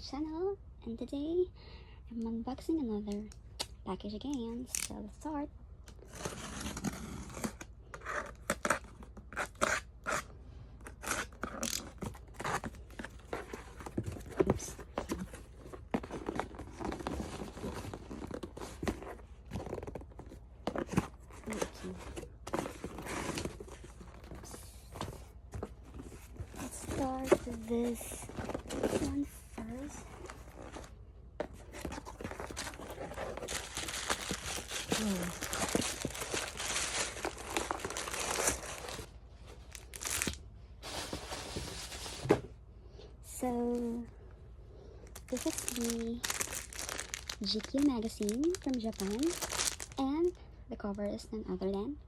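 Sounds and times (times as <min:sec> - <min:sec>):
packaging knocks: 0:31.4 - 0:39.0
package tearing and crinkling: 0:31.9 - 0:39.1, 0:39.7 - 0:40.4, 0:45.2 - 0:50.0.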